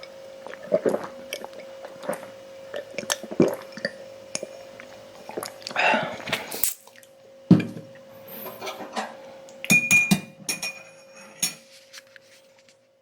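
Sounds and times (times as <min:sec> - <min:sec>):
glass clinking: 0:09.7 - 0:11.6.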